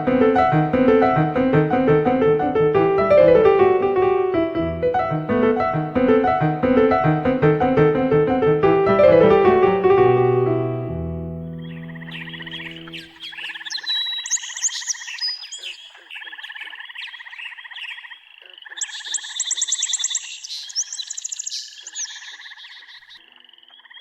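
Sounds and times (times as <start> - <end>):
birds chirping: 0.0 - 23.2
fast high bird trill: 11.5 - 15.7
frogs trilling: 11.6 - 24.0.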